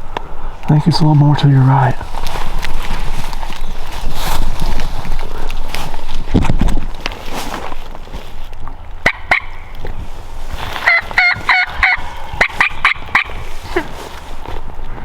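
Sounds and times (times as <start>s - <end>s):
turkey yelping: 9.0s - 9.8s, 10.6s - 14.0s.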